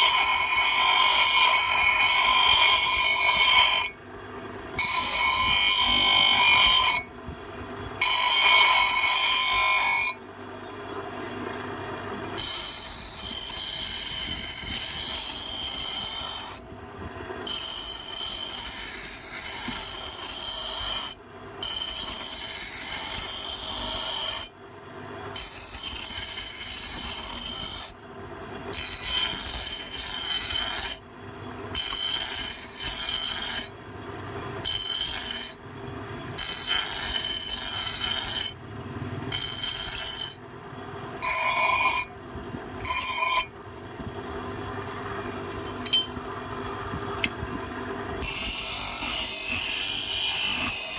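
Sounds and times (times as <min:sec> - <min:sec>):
power tool whine on steel: 0:00.0 - 0:04.1, 0:04.8 - 0:07.2, 0:08.0 - 0:10.3, 0:12.4 - 0:16.7, 0:17.4 - 0:24.6, 0:28.7 - 0:31.1, 0:31.7 - 0:33.8, 0:34.6 - 0:35.7, 0:36.3 - 0:38.7, 0:39.3 - 0:40.5, 0:41.2 - 0:42.2, 0:42.8 - 0:43.6, 0:48.2 - 0:50.9.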